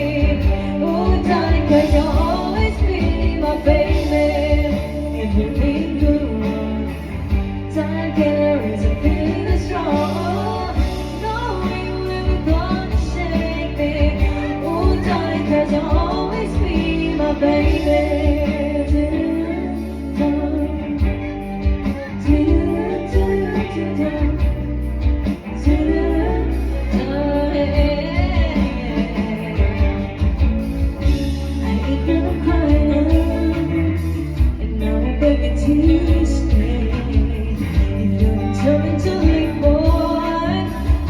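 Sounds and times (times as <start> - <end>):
bass and drums: 0.0 - 41.0
lead singer: 0.0 - 41.0
live band playing: 0.0 - 41.0.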